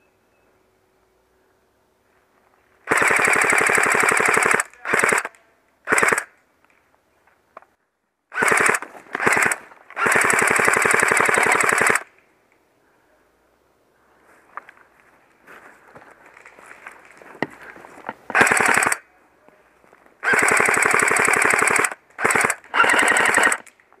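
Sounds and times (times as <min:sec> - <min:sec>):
airsoft rifle firing full auto: 0:02.8 - 0:06.4, 0:08.3 - 0:12.1, 0:18.3 - 0:19.0, 0:20.2 - 0:23.7.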